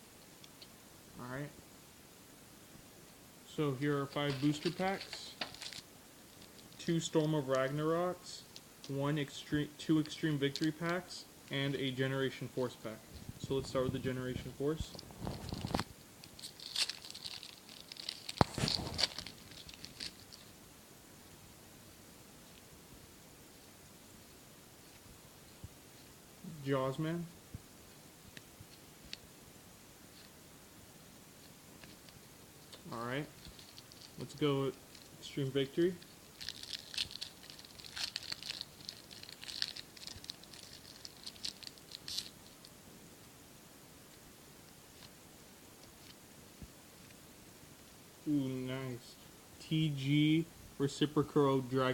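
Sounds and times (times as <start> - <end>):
foil wrapper crinkling: 4.1 - 5.8, 14.9 - 20.5, 33.4 - 35.2, 35.9 - 42.7.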